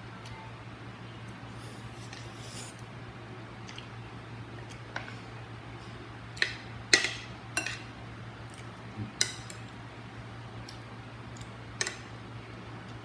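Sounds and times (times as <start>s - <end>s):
low steady hum: 0.0s - 13.0s.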